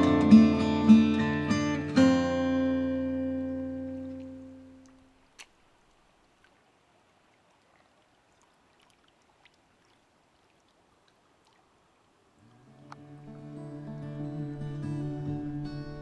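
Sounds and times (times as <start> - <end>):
acoustic guitar music: 0.0 - 4.8, 12.5 - 16.0
faint steady hiss: 0.0 - 16.0.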